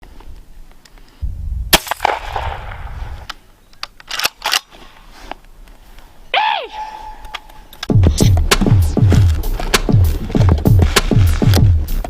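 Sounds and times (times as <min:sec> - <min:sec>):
shotgun shot with echo: 0:01.7 - 0:03.3
sharp clicks and knocks: 0:07.3 - 0:11.7.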